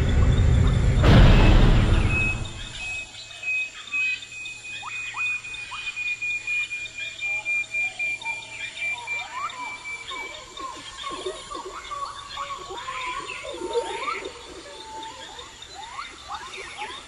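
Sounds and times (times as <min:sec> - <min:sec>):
loud low rumble: 0:00.0 - 0:03.0
birds chirping: 0:00.0 - 0:17.0.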